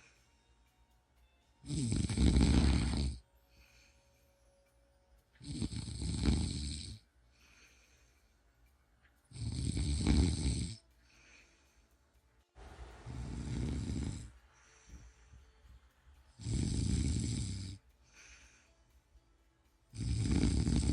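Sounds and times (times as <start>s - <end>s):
faint breaths: 0.0s - 1.0s, 2.2s - 6.2s, 6.8s - 20.9s
person snoring: 1.6s - 3.2s, 5.4s - 7.7s, 9.3s - 10.8s, 13.0s - 15.3s, 16.3s - 18.7s, 19.9s - 20.9s.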